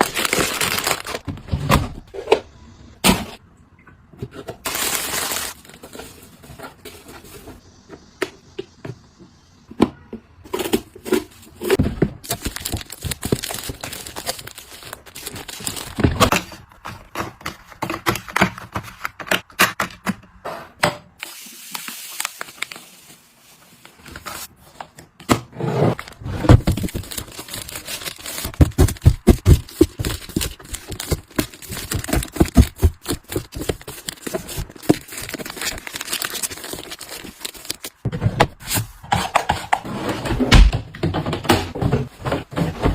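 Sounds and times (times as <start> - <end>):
plastic packaging crinkling: 0.0 - 1.3, 4.6 - 6.4, 12.2 - 16.3, 21.7 - 24.5, 26.0 - 38.0.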